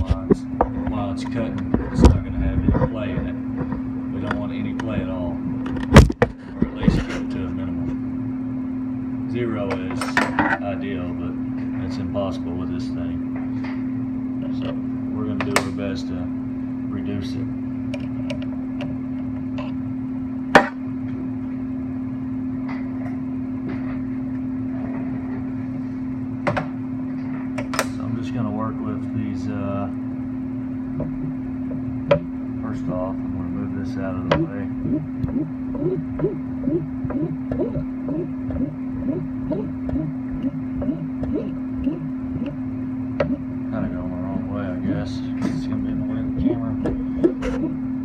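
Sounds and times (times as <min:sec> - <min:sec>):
steady hum: 0:00.0 - 0:48.0
lathe drive humming: 0:34.3 - 0:48.0.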